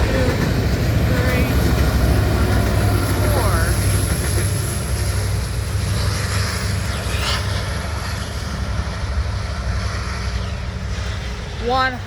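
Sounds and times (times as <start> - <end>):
steel wheels clattering on rails: 0.0 - 8.2
freight train rumbling past: 0.0 - 12.0.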